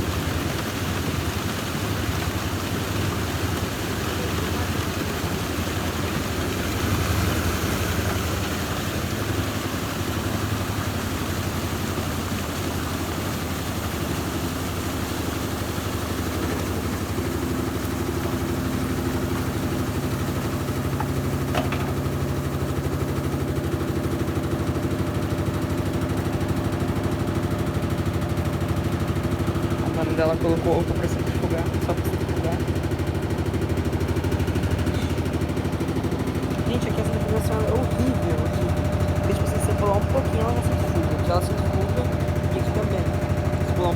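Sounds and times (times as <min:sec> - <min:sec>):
washing machine spinning: 0:00.0 - 0:43.9
steady hum: 0:13.8 - 0:43.9.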